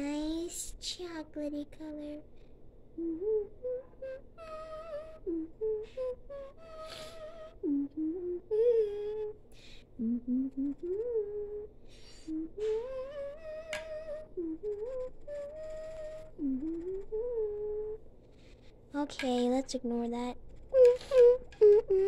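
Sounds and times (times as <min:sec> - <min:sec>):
person humming: 0:03.0 - 0:09.4, 0:10.0 - 0:18.0, 0:20.6 - 0:22.0.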